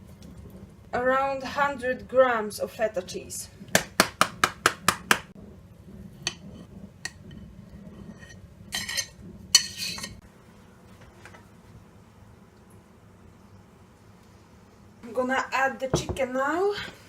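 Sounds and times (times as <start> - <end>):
kitchen utensils and dishes clattering: 8.1 - 10.2.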